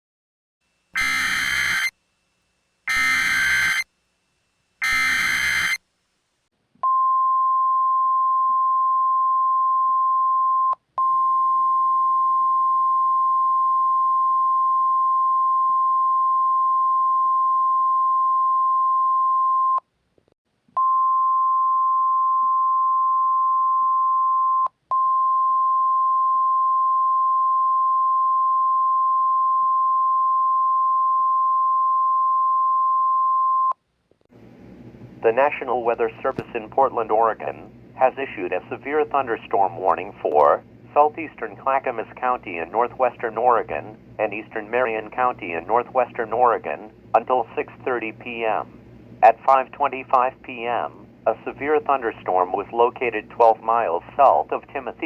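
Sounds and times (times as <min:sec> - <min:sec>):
harsh data screech: 0:01.0 - 0:01.9, 0:02.9 - 0:03.9, 0:04.8 - 0:05.8
steady high alarm beep: 0:01.0 - 0:01.9, 0:02.9 - 0:03.9, 0:04.8 - 0:05.8.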